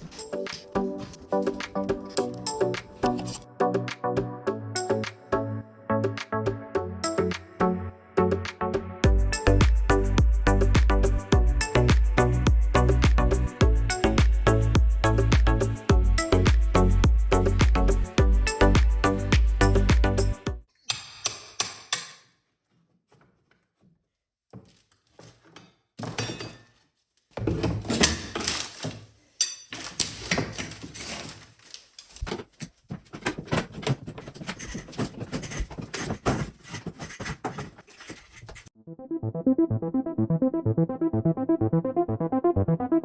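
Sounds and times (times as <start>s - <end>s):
wall demolition knocks and scraping: 24.6s - 38.7s.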